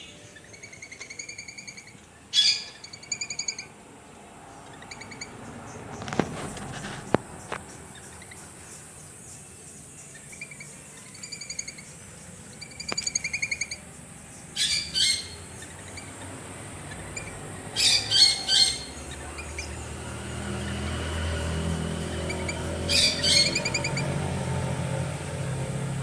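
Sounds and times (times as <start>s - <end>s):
bird squawks: 0.0s - 3.8s, 4.7s - 19.9s, 20.6s - 24.2s
birds chirping: 0.0s - 26.0s.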